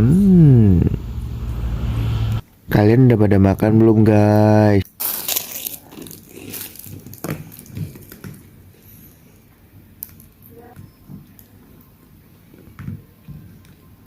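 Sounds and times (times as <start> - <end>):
person chewing food: 4.9 - 8.4.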